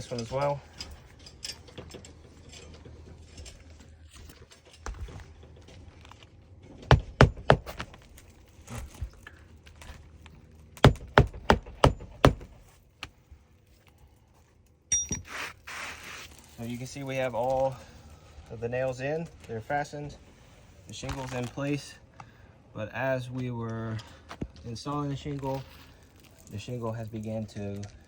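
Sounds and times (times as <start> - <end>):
hammer driving nails: 6.9 - 7.9, 10.8 - 12.6.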